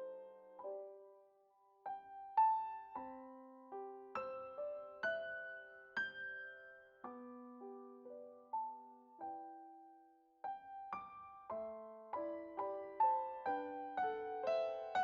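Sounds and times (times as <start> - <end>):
gentle solo piano music: 0.0 - 15.0.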